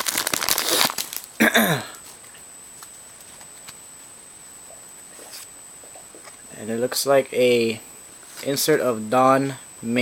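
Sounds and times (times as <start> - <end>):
wrapper crinkling and tearing: 0.0 - 1.4.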